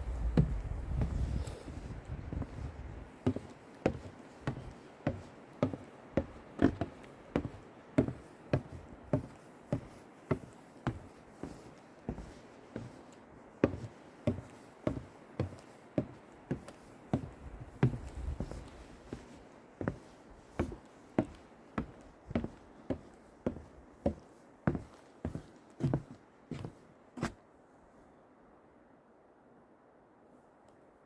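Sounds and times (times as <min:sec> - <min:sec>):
low rumble: 0:00.0 - 0:02.8
footsteps walking: 0:00.0 - 0:13.0, 0:13.6 - 0:27.4.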